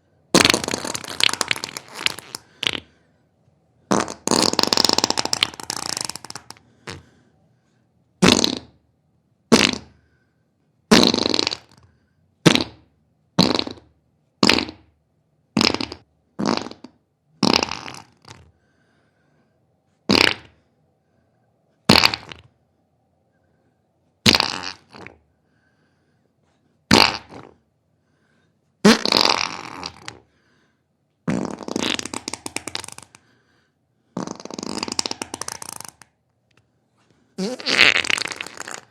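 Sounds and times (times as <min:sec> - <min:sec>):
person farting: 0:00.3 - 0:03.0, 0:03.9 - 0:07.2, 0:08.2 - 0:08.8, 0:09.5 - 0:10.0, 0:10.9 - 0:18.5, 0:20.1 - 0:20.6, 0:21.9 - 0:22.5, 0:24.2 - 0:25.2, 0:26.9 - 0:27.6, 0:28.8 - 0:30.3, 0:31.2 - 0:33.3, 0:34.2 - 0:36.2, 0:37.4 - 0:38.9.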